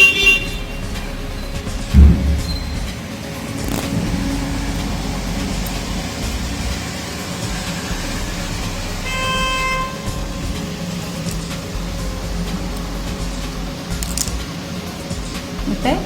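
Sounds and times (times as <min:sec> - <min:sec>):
vehicle horn: 0:00.0 - 0:11.2
traffic engine rumble: 0:00.0 - 0:16.0.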